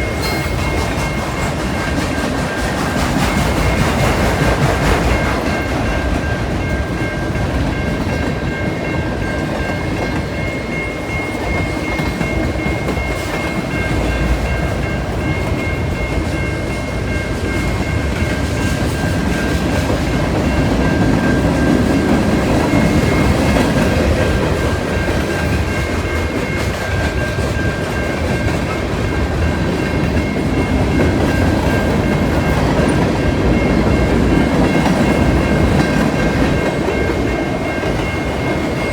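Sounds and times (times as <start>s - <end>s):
high ringing tone: 0.0s - 2.0s
freight train wheels clattering: 0.0s - 38.9s.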